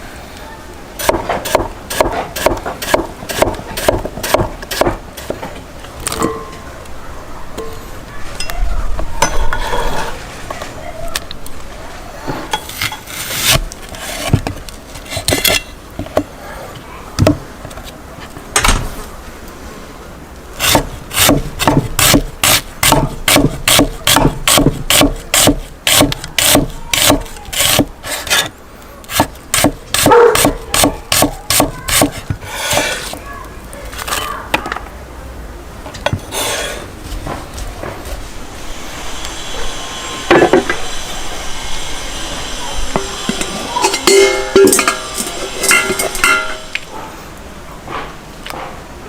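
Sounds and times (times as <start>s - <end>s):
scrapes and knocks: 12.3s - 16.3s
rasping strokes on wood: 20.6s - 28.5s, 29.1s - 33.2s.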